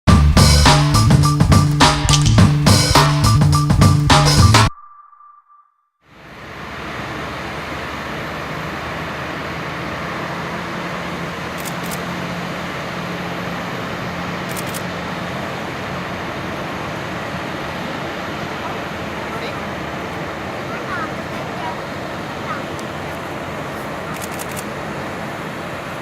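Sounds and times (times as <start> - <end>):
outdoor airport noise: 6.1 - 26.0
propeller aircraft engine drone: 6.1 - 26.0.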